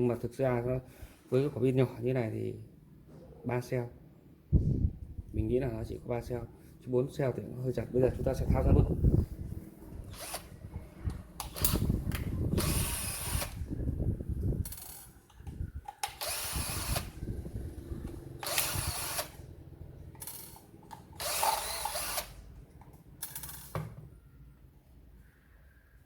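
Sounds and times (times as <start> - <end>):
cordless drill whirring: 10.0 - 13.7, 16.0 - 19.5, 20.2 - 22.5.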